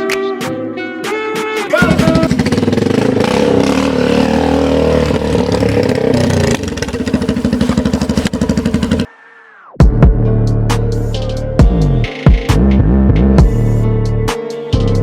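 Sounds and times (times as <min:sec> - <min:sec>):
motorcycle engine running: 0:01.8 - 0:09.1.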